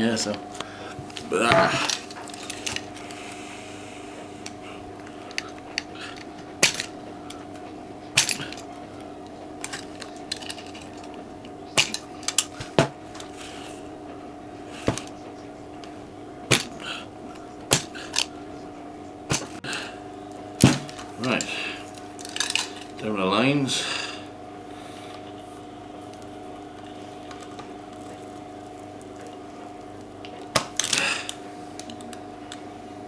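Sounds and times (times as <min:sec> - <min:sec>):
low electrical hum: 0:00.0 - 0:33.0
tools clattering on workbench: 0:01.4 - 0:03.0, 0:05.3 - 0:13.6, 0:14.8 - 0:18.4, 0:19.3 - 0:19.7, 0:22.2 - 0:23.0.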